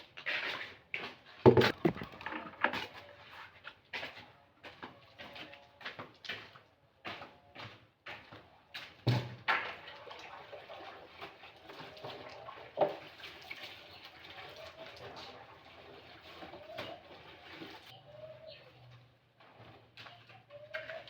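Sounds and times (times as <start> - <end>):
water sloshing and swishing: 9.1 - 18.0.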